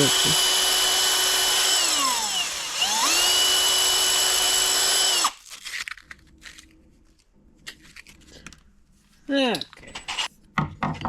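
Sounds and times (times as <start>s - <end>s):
power tool whining: 0.0s - 5.4s.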